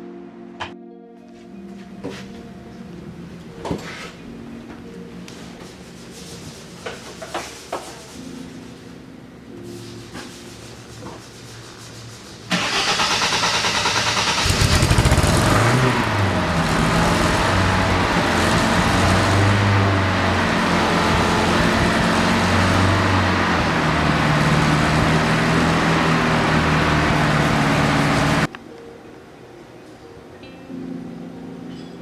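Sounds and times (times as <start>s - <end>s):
car engine idling: 12.5s - 28.5s
car starter motor cranking: 12.5s - 28.5s.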